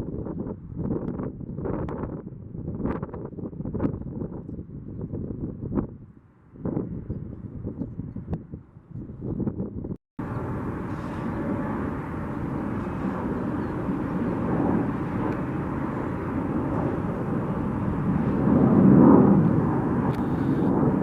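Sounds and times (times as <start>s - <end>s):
jet engines rumbling: 10.2s - 21.0s.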